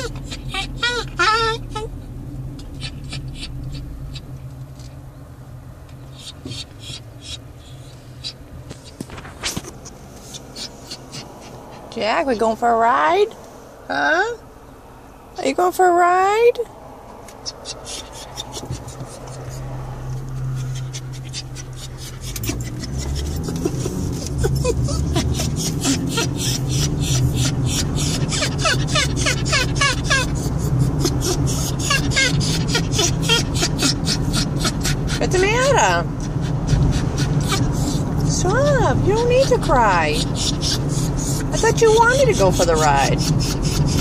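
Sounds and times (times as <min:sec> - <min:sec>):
car rumbling while moving: 0:00.0 - 0:44.0
dog panting: 0:10.2 - 0:12.5, 0:17.4 - 0:44.0.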